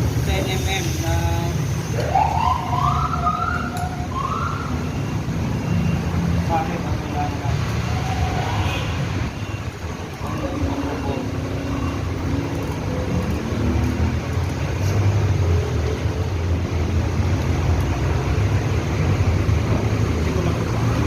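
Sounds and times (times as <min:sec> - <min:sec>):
motor vehicle rumbling: 0:00.0 - 0:21.0.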